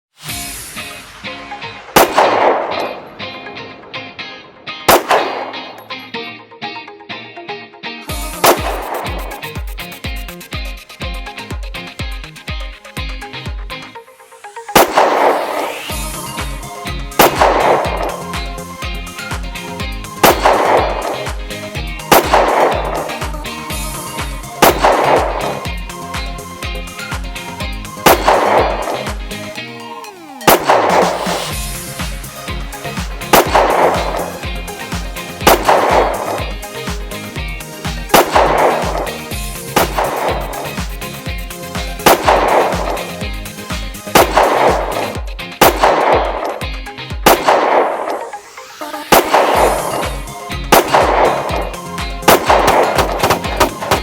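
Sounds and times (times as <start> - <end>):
rifle gunshots with echo: 2.0 - 3.1, 4.9 - 5.9, 8.4 - 9.4, 14.8 - 16.0, 17.2 - 18.4, 20.2 - 23.4, 24.6 - 25.7, 28.0 - 29.2, 30.5 - 31.6, 33.2 - 34.5, 35.4 - 36.6, 38.0 - 40.8, 41.9 - 43.2, 44.1 - 46.6, 47.2 - 48.3, 49.1 - 54.0
music with bass beat: 8.0 - 54.0.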